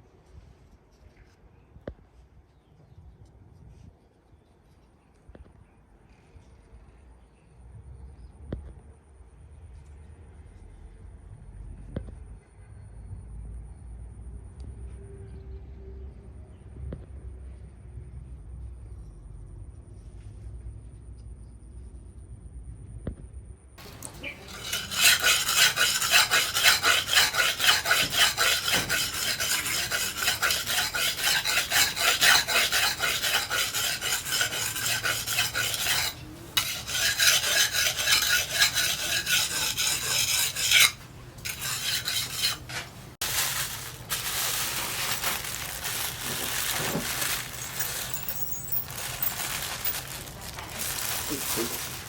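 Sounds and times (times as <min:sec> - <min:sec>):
knife blade rubbing on abrasive: 0:23.8 - 0:50.0.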